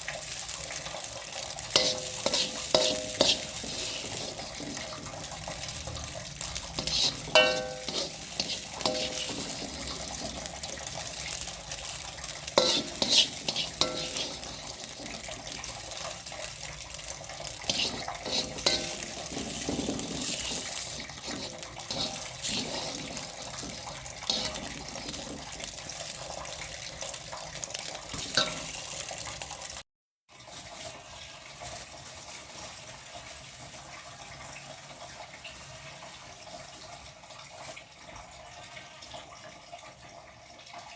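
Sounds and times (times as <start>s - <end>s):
running tap: 0.0s - 29.8s
utensils clattering against pans: 1.7s - 25.8s, 28.1s - 29.1s
steady hiss: 6.8s - 10.4s, 12.6s - 14.8s.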